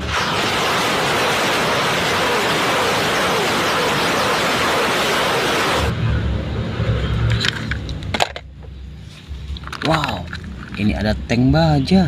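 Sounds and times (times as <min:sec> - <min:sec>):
loud rushing hiss: 0:00.0 - 0:06.6.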